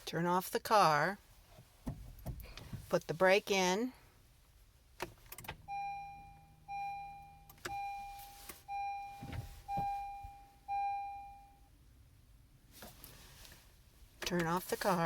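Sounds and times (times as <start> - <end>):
dashboard warning chime beeping: 5.5 - 11.8.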